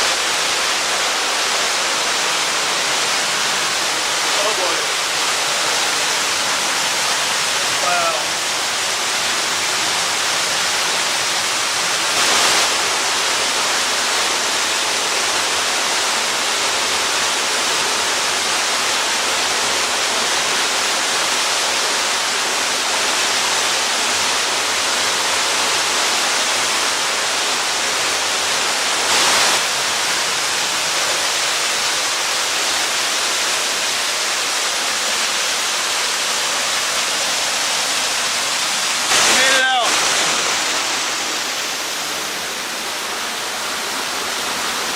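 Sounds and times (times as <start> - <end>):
waterfall roaring: 0.0 - 44.9.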